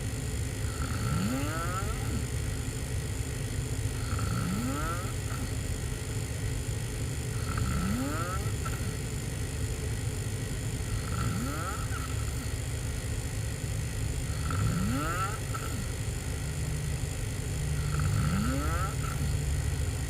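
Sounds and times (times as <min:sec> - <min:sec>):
steady low background hum: 0:00.0 - 0:20.0
person snoring: 0:00.6 - 0:02.4, 0:03.9 - 0:05.6, 0:07.3 - 0:09.1, 0:10.8 - 0:12.8, 0:14.1 - 0:20.0.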